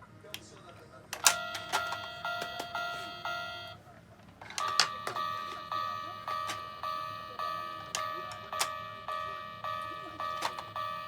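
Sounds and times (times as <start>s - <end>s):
sharp clicks: 1.2s - 2.8s
toy crossing warning bell chiming: 1.2s - 3.8s, 4.5s - 11.0s.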